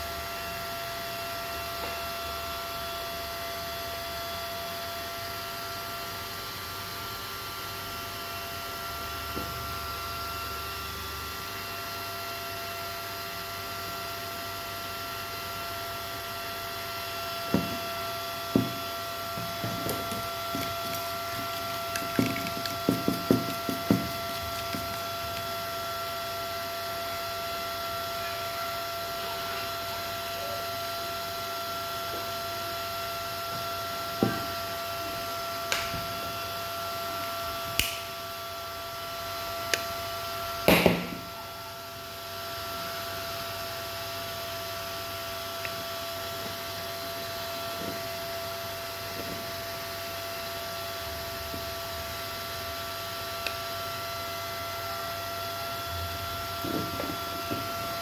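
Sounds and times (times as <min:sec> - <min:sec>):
steady electrical hum: 0:00.0 - 0:58.0
tools clicking and knocking: 0:19.4 - 0:25.6.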